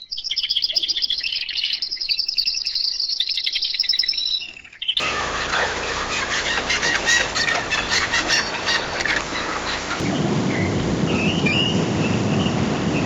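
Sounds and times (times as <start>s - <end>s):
chorus of bird calls: 0.0s - 13.0s
songbirds chirping in trills: 0.0s - 13.0s
steady rushing background: 5.0s - 13.0s.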